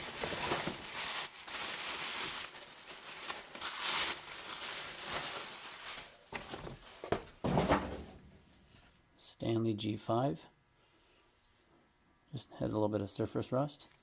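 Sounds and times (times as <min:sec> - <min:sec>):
packing material rustling: 0:00.0 - 0:08.1
handling knocks: 0:06.3 - 0:08.4.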